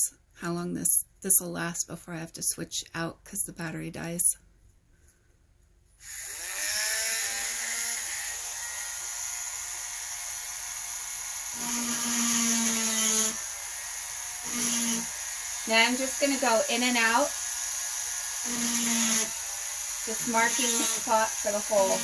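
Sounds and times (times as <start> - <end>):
rotary tool whining: 6.0 - 22.0.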